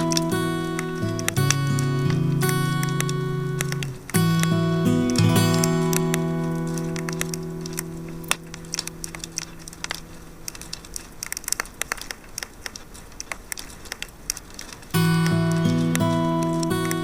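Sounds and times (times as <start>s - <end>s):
acoustic guitar chord: 0.0s - 8.4s, 15.0s - 17.0s
campfire crackling and popping: 0.0s - 17.0s.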